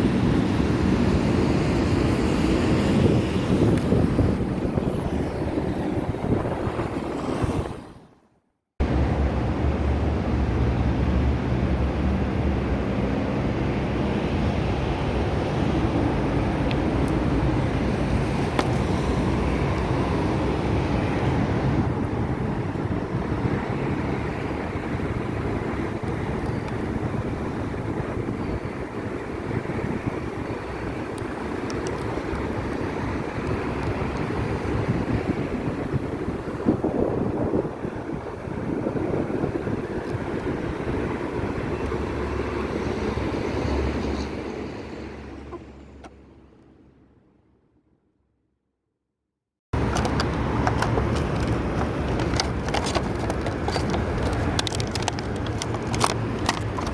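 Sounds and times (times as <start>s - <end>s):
wind on microphone: 0.0s - 8.2s, 13.7s - 44.6s.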